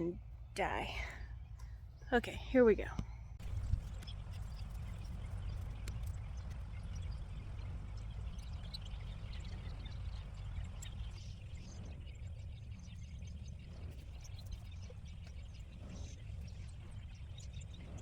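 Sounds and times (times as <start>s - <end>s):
steady low rumble: 0.0s - 18.0s
small scattered clicks: 2.9s - 12.0s.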